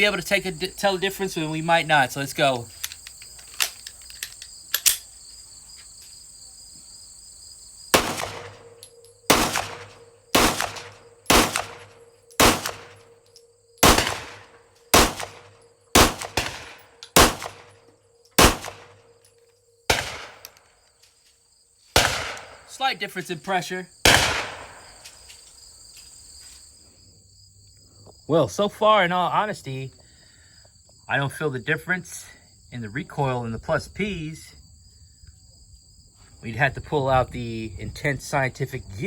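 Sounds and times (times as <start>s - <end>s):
pistol shots echoing: 8.0s - 13.2s, 13.8s - 19.1s, 19.9s - 20.6s, 22.0s - 22.7s, 24.1s - 25.0s.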